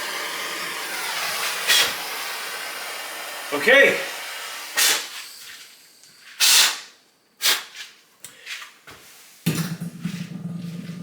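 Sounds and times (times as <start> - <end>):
torch flame hissing: 0.0 - 7.7.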